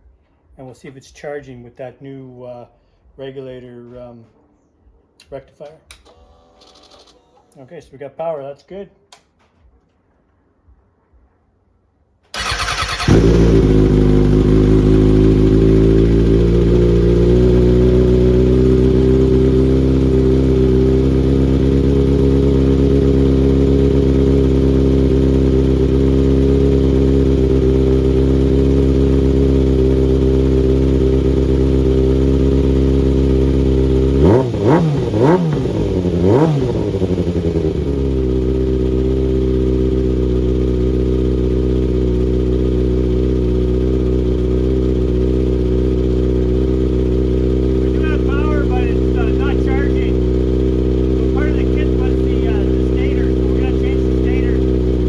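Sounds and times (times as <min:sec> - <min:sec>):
motorcycle engine starter cranking: 0:05.9 - 0:07.6, 0:12.3 - 0:13.8
engine revving: 0:12.4 - 0:55.0
motorcycle engine idling: 0:12.4 - 0:55.0.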